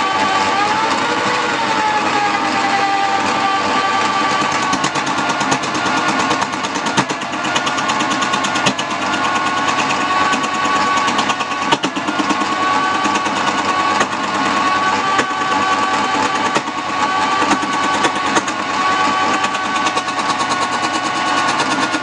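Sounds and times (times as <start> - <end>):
lathe motor whine: 0.0 - 22.0
turning tool rasping wood: 0.0 - 22.0.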